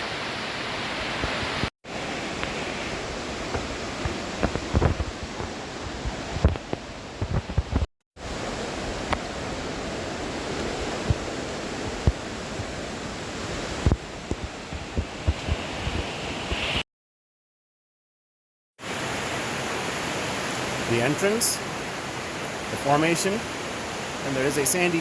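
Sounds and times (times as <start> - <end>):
steady rushing noise: 18.9 - 21.7.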